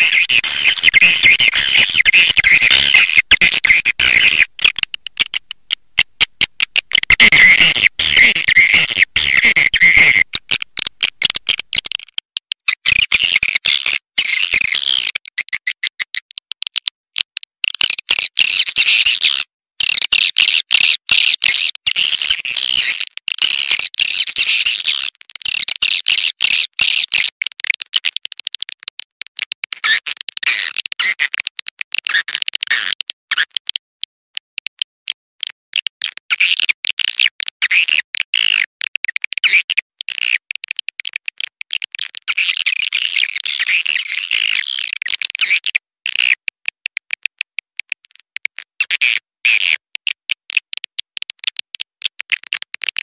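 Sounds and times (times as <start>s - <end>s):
swiftlets twittering: 0.0s - 10.4s.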